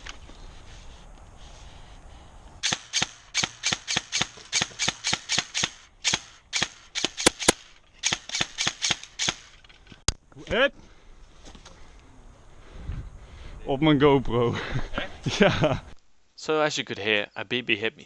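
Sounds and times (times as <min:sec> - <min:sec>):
airsoft gun shots: 0:02.6 - 0:09.5
loud sharp cracks: 0:02.6 - 0:09.6.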